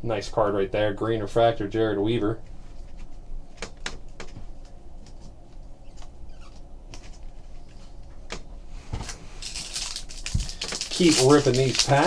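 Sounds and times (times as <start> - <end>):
low background hum: 0.0 - 12.0
trading cards clicking: 9.5 - 12.0.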